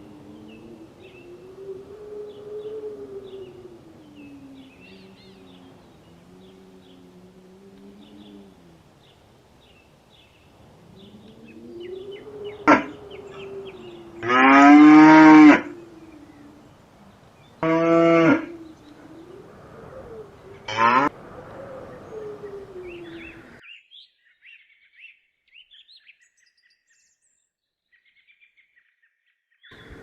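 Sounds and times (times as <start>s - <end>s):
distant cattle lowing: 0.0s - 23.6s
cattle mooing: 12.6s - 15.7s, 17.6s - 18.5s, 20.7s - 21.1s.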